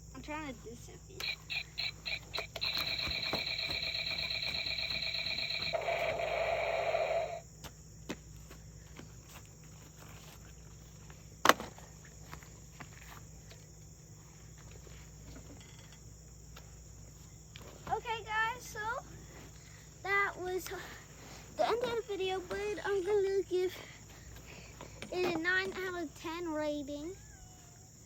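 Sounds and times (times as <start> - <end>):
plastic toy handling ticks: 1.2 - 6.4
toy weapon pulsing tone: 1.2 - 7.4.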